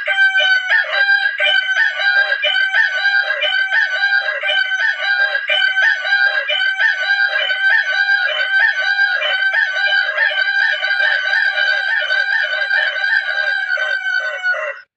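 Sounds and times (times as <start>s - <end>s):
continuous crow-like tone: 0.0s - 14.9s.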